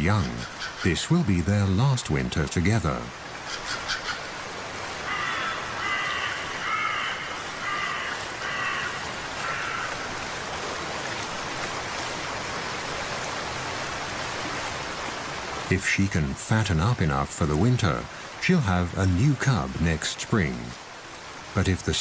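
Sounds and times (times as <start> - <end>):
crow cawing: 3.4 - 4.4, 5.0 - 10.2.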